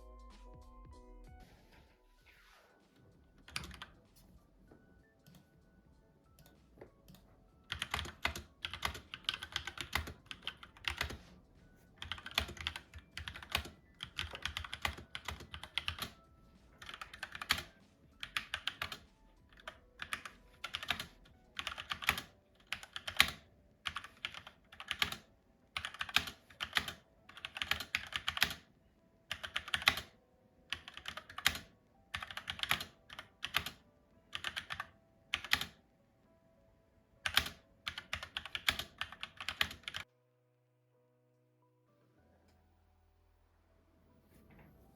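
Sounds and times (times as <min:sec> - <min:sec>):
mechanical keyboard typing: 0:03.4 - 0:04.0, 0:06.3 - 0:11.4, 0:12.0 - 0:28.7, 0:29.3 - 0:35.8, 0:37.2 - 0:40.1.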